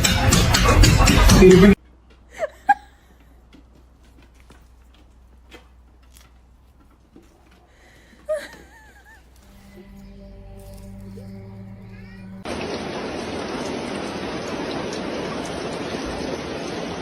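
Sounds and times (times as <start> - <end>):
steady low hum: 9.2 - 12.5.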